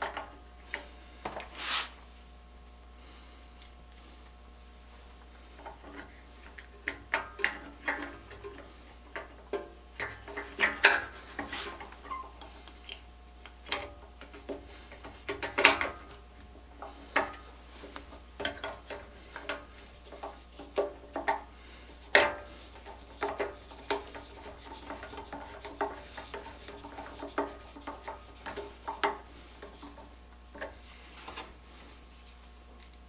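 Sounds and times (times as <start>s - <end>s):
hand tools clicking and clinking: 6.6s - 16.0s.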